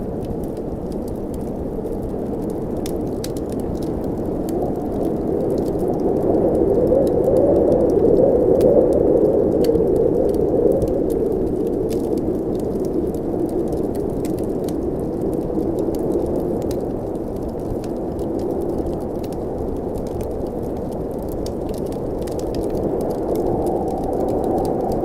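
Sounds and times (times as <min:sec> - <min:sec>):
wood fire crackling: 0:00.0 - 0:25.0
blizzard wind rushing: 0:03.0 - 0:16.8, 0:21.8 - 0:25.0.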